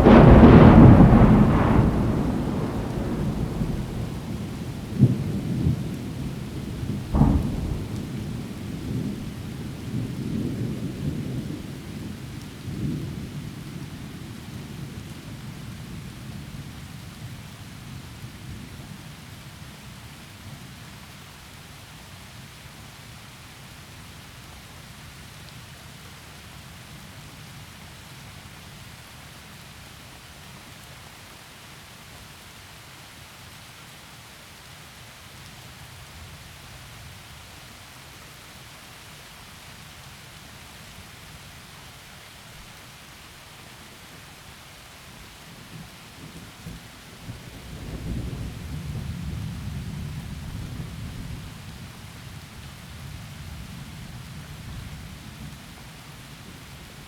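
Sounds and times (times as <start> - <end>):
sharp thunder cracks: 0.0 - 11.6
thunder rolling: 0.0 - 13.4, 45.6 - 52.4
heavy rain falling through trees: 0.0 - 57.0.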